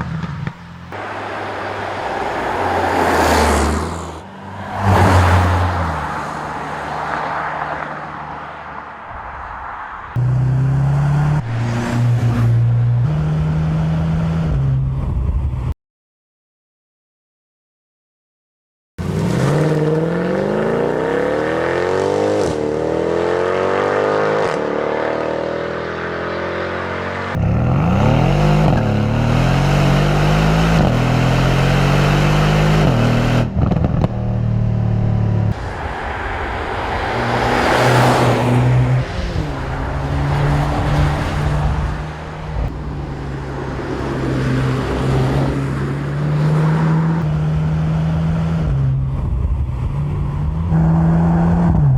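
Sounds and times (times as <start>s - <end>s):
car engine accelerating through gears: 19.0s - 51.9s.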